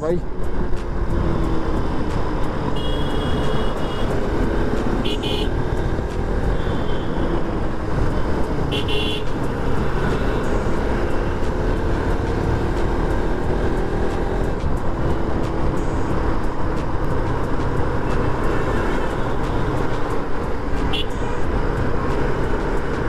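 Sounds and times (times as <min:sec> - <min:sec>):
road traffic: 0:00.0 - 0:23.0
horn beep: 0:02.7 - 0:04.1, 0:05.0 - 0:05.6, 0:08.7 - 0:09.3.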